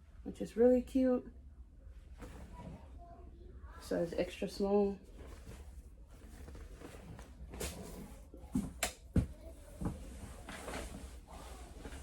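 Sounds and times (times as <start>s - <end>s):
clothes rustling: 5.0s - 12.0s.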